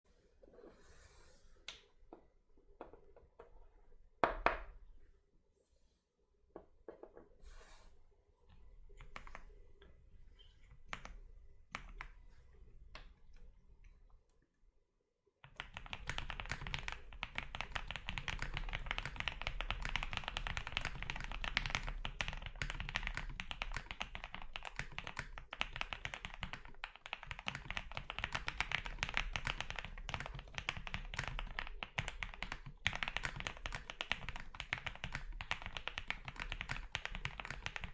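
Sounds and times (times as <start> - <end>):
keyboard key clicks and taps: 15.5 - 37.9
mechanical keyboard typing: 15.5 - 37.9.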